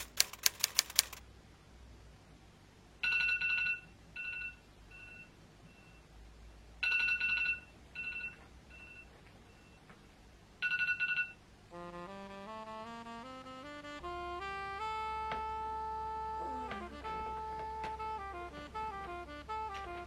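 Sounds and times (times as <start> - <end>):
two-note phone ring: 3.0 - 5.3, 6.8 - 8.9, 10.6 - 11.4.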